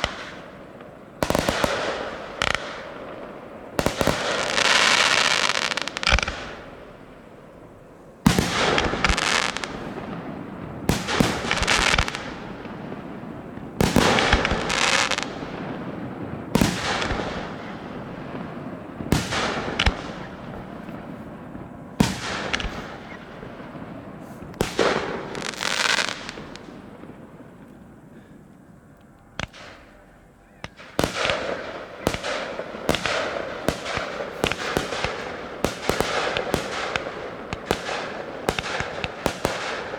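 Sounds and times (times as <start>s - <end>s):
fireworks bursting with bangs: 0.0s - 39.9s
fireworks crackling: 0.0s - 39.9s.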